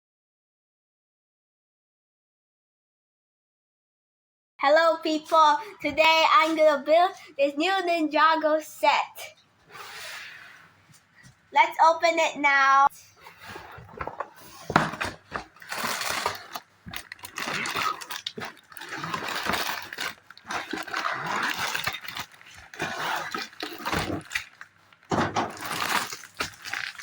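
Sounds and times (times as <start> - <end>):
cardboard tearing: 13.3 - 27.0
packaging rustling: 13.3 - 27.0.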